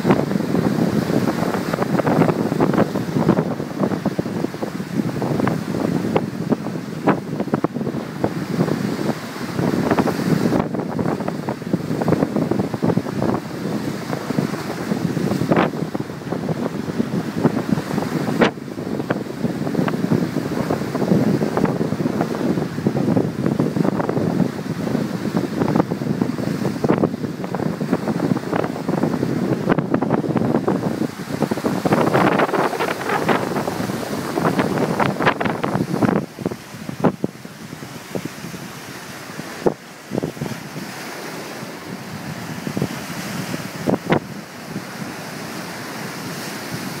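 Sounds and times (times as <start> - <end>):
sea surf: 0.0 - 47.0
wind buffeting microphone: 0.0 - 47.0.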